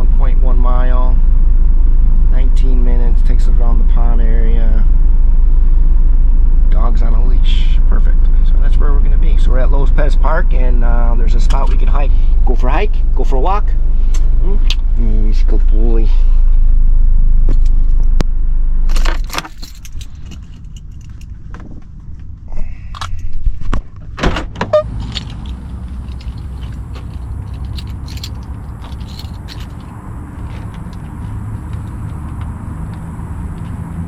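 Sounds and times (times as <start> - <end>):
car engine running: 0.0 - 34.0
keys jangling: 18.9 - 22.4, 24.6 - 31.0
car doors opening and shutting: 18.9 - 34.0.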